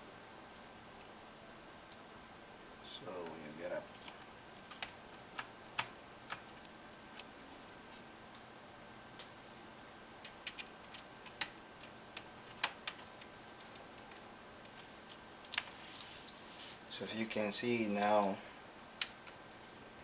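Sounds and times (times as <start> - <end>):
laptop parts clicking and tapping: 3.9 - 7.3, 10.2 - 15.7, 19.0 - 19.6.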